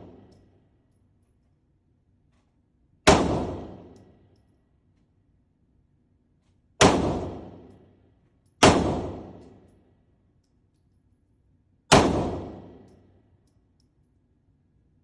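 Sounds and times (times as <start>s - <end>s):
gunshots: 3.1s - 3.9s, 6.8s - 7.6s, 8.6s - 9.4s, 11.9s - 12.8s.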